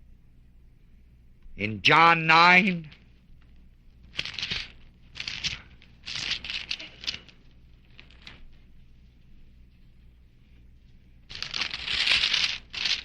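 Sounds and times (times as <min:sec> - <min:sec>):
faint low hum: 0:00.0 - 0:13.0
thin pages turning: 0:04.0 - 0:08.8, 0:11.3 - 0:13.0.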